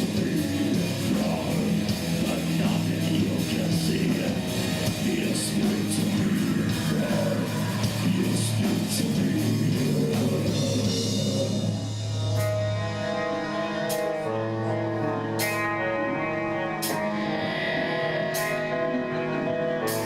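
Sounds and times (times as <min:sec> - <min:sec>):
heavy rock music: 0:00.0 - 0:20.0.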